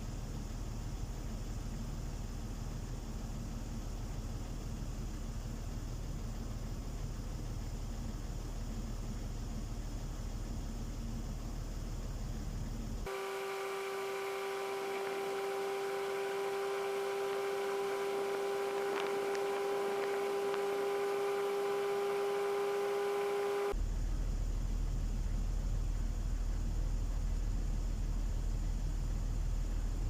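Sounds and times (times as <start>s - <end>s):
steady humming tone: 0.0s - 30.0s
faint ticks: 18.3s - 20.7s.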